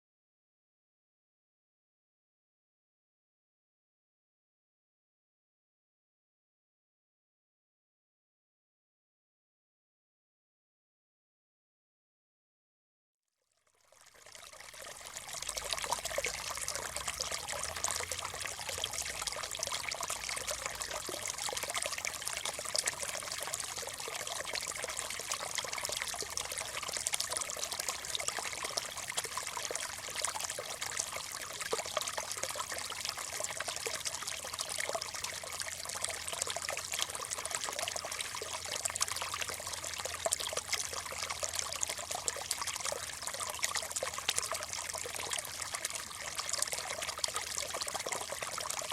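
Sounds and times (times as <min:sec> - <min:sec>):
stream trickling: 0:13.5 - 0:48.9.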